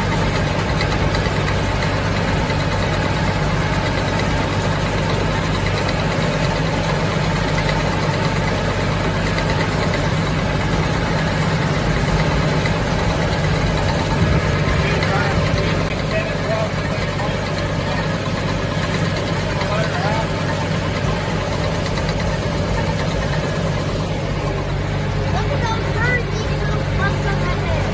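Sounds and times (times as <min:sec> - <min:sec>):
hay baler mechanical din: 0:00.0 - 0:27.9
tractor engine running: 0:00.0 - 0:27.9.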